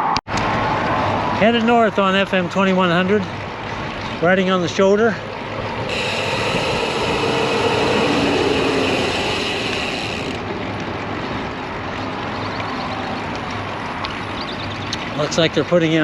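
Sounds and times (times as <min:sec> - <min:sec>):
road traffic: 0:05.3 - 0:14.8.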